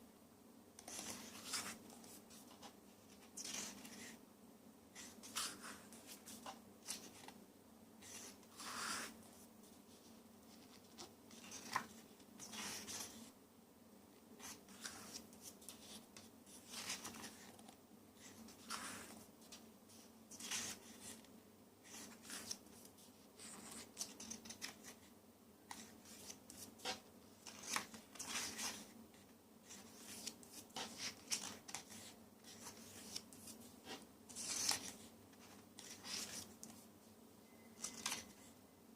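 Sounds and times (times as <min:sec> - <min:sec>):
paper rustling: 0:25.7 - 0:36.8, 0:37.8 - 0:38.5.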